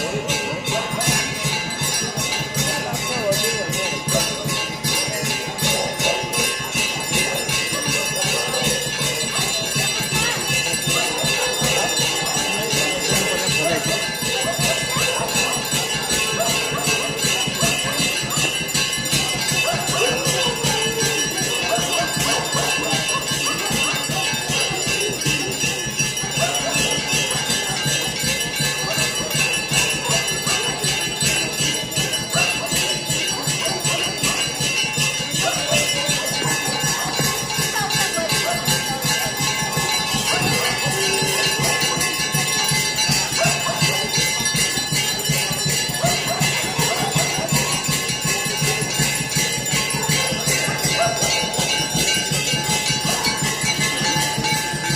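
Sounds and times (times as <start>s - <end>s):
temple bells ringing rapidly: 0.0s - 54.9s
voices: 0.0s - 54.9s.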